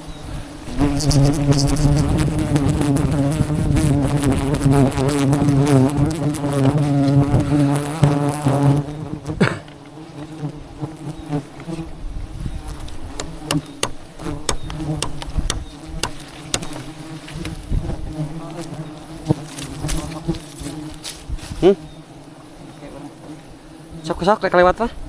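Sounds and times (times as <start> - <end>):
bees buzzing: 0.0 - 24.8.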